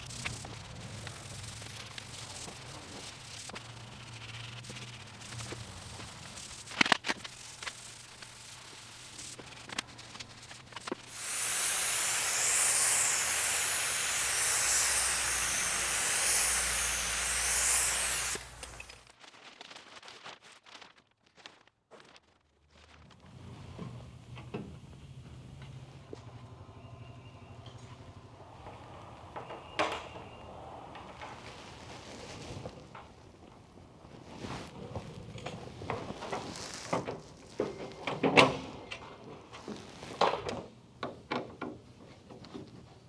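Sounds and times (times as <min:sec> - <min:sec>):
compressed air hissing: 0:00.0 - 0:19.1.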